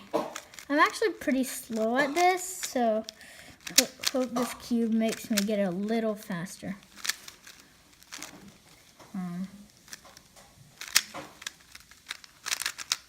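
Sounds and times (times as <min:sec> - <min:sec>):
puzzle cube clicking: 0:00.0 - 0:13.0
person humming: 0:09.1 - 0:09.6.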